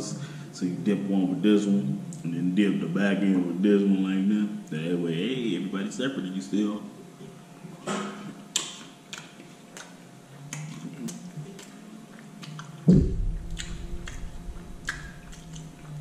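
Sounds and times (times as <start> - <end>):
person chewing food: 8.5 - 16.0
wet mouth clicks and smacks: 8.5 - 16.0
dull low thump: 12.9 - 15.3.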